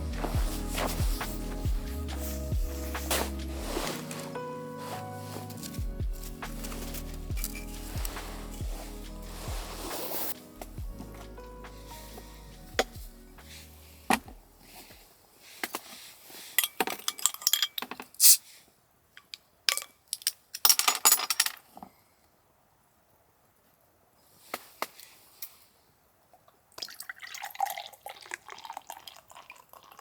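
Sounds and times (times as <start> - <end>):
background music: 0.0 - 14.9.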